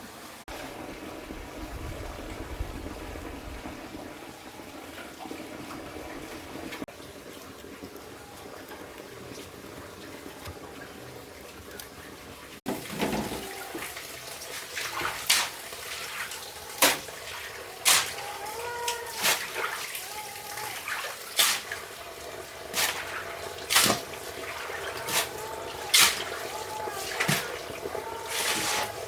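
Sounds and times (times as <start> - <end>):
low steady water wash: 0.0 - 29.0
water splashing: 12.4 - 29.0.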